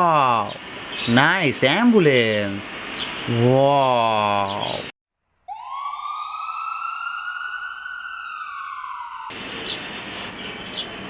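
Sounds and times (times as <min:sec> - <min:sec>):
siren wailing: 0:05.5 - 0:09.8.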